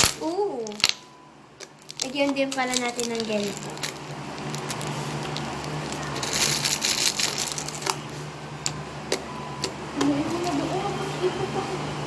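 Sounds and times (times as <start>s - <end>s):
crinkling handling noises: 0.0s - 11.0s
steady low hum: 0.0s - 12.0s
bright rustle: 1.7s - 8.7s.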